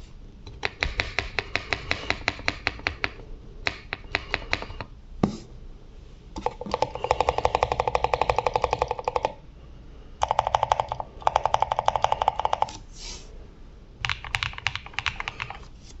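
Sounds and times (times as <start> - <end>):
mechanical keyboard typing: 0.5 - 4.9, 6.4 - 9.4, 10.2 - 12.8, 14.0 - 15.6.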